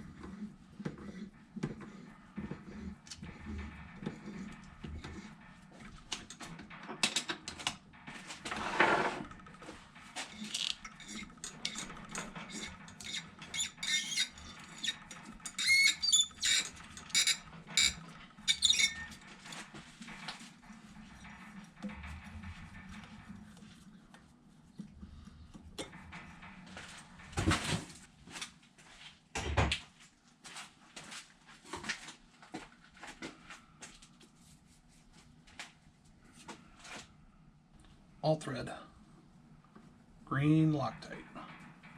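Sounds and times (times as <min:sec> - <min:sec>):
clicks and knocks on metal: 0:09.2 - 0:23.5
short squeaks: 0:10.4 - 0:19.3.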